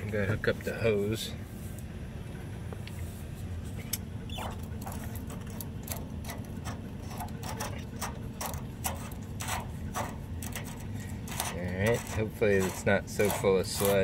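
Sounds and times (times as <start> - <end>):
steady low hum: 0.0 - 14.0
hose coupling clicks and scrapes: 4.3 - 14.0.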